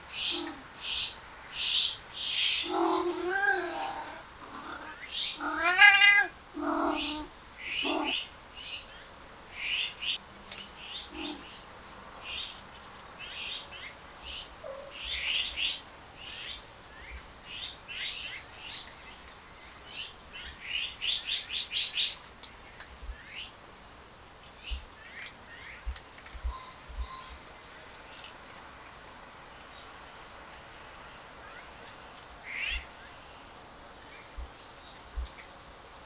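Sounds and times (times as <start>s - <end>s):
small birds chirping: 0.0s - 36.0s
cat meowing: 2.6s - 8.2s.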